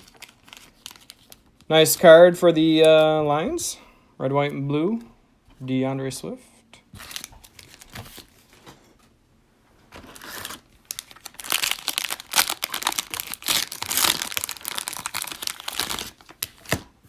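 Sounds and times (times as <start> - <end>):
plastic wrapper crinkling: 0.0 - 2.9, 7.0 - 8.6, 10.0 - 16.9.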